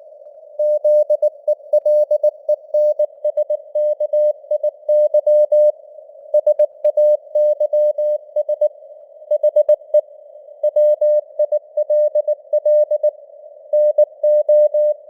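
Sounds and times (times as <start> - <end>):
faint radio hiss: 5.6 - 15.0.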